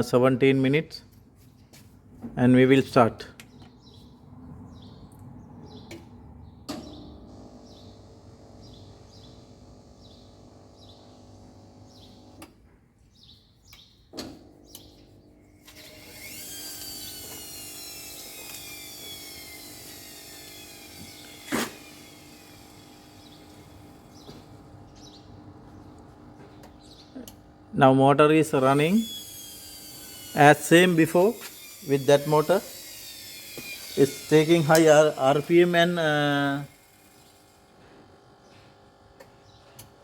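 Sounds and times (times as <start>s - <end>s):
washing machine spin whine: 6.9s - 12.4s, 15.5s - 27.7s, 28.5s - 40.0s
washing machine motor hum: 7.0s - 12.5s, 15.5s - 27.8s.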